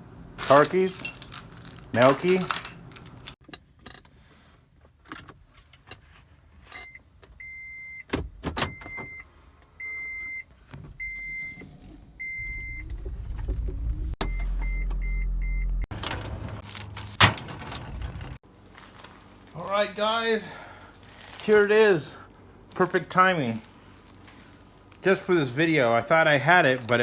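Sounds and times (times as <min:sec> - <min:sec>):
clunks and handling noises: 0:00.4 - 0:04.2, 0:15.9 - 0:19.2
car engine rumble: 0:11.6 - 0:18.4
car warning chime beeping: 0:14.2 - 0:15.9.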